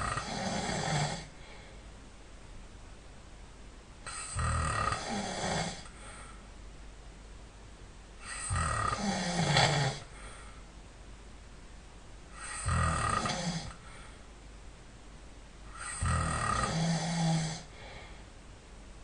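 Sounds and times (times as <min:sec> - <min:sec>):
person snoring: 0:00.0 - 0:01.6, 0:04.0 - 0:06.0, 0:08.2 - 0:10.2, 0:12.3 - 0:14.1, 0:15.7 - 0:18.2.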